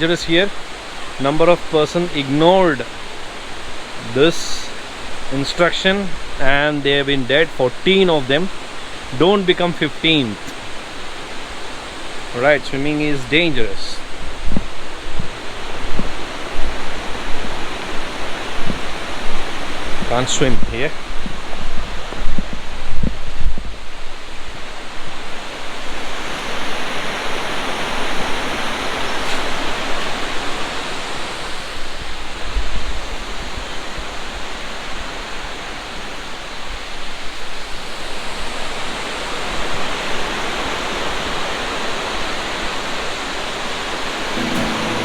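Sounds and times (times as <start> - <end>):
waterfall roaring: 0.0 - 20.6, 44.4 - 45.0.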